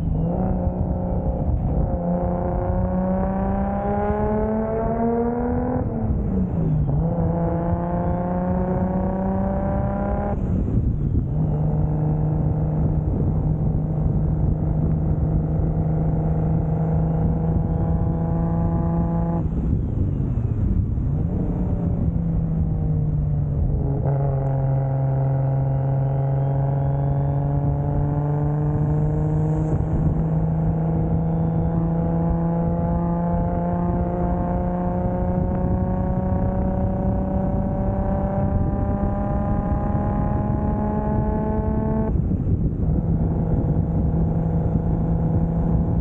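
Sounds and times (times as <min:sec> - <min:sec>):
car engine revving: 0:00.0 - 0:46.0.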